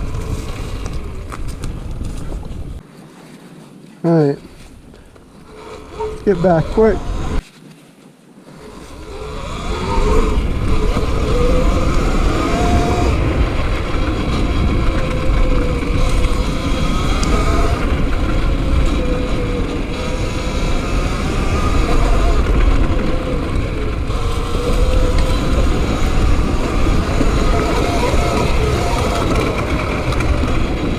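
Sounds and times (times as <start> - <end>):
wind buffeting microphone: 0.0 - 2.8, 4.5 - 7.4, 8.2 - 30.9
trail rumble: 0.0 - 30.9
electric motor whine: 8.5 - 30.9.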